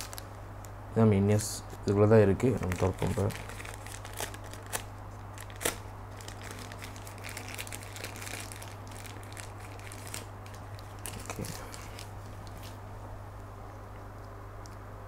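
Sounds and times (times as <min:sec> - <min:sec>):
packaging crinkling and rustling: 0:00.0 - 0:00.4, 0:01.8 - 0:12.8
steady low hum: 0:00.0 - 0:15.0.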